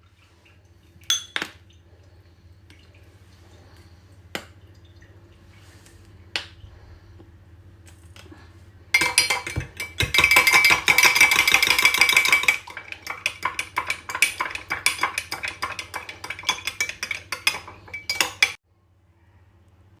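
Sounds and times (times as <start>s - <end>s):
metal spoon clinking in container: 9.0s - 18.6s.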